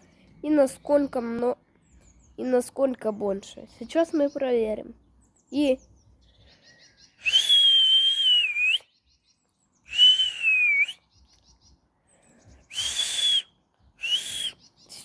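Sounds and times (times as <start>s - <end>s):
person whistling: 7.2s - 8.9s, 9.9s - 11.0s, 12.7s - 14.6s.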